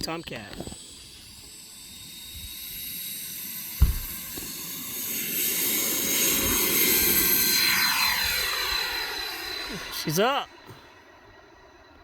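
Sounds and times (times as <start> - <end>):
model jet fan whine: 0.0 - 12.0
sharp thump: 3.8 - 4.2.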